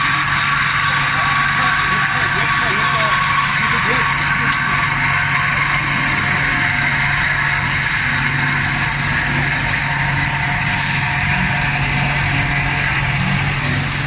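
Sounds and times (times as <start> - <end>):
band saw machine hum: 0.0 - 14.0.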